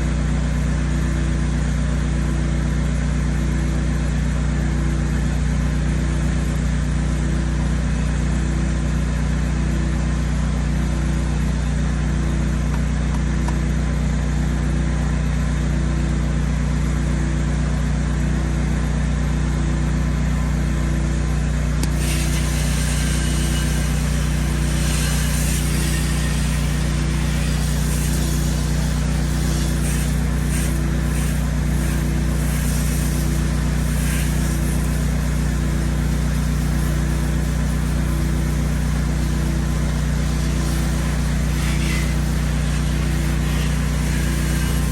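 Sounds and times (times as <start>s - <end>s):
pressure washer engine running: 0.0s - 44.9s
high-pressure water spray hissing: 20.2s - 44.9s.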